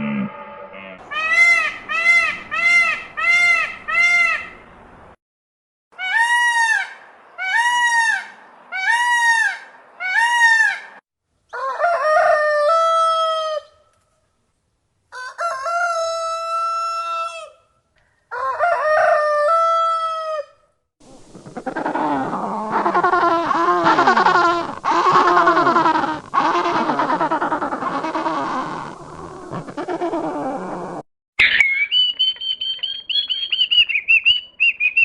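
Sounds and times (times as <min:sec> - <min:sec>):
rooster crowing: 0:11.5 - 0:13.7, 0:15.1 - 0:17.6, 0:18.3 - 0:20.6
fowl calling: 0:21.4 - 0:30.5.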